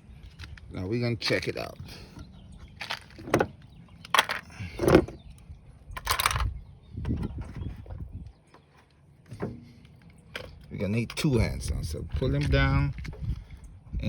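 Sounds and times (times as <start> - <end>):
latch metallic clicks and clunks: 2.2 - 5.3.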